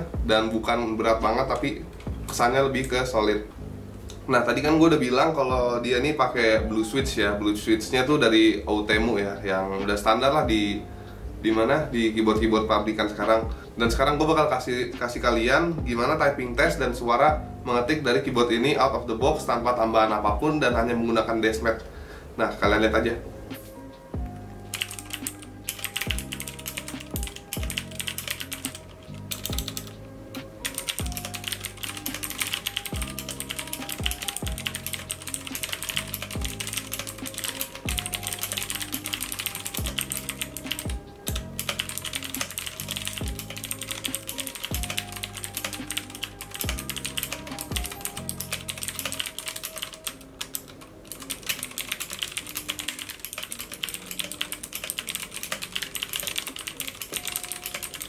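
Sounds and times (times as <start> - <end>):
fast typing on mechanical keyboard: 24.7 - 29.9, 30.6 - 58.0.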